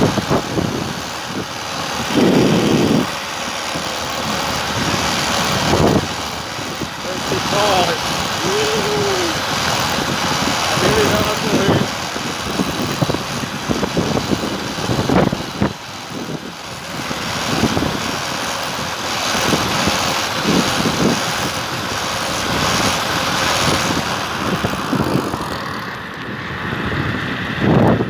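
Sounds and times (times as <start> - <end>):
road noise: 0.0 - 28.0
wind rushing: 19.4 - 28.0.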